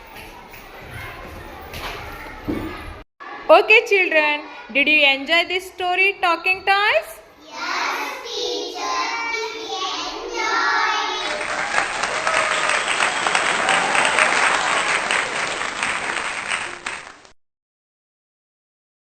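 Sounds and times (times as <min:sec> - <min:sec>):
children's voices answering together: 0:07.4 - 0:11.5
clapping applause: 0:11.2 - 0:17.4.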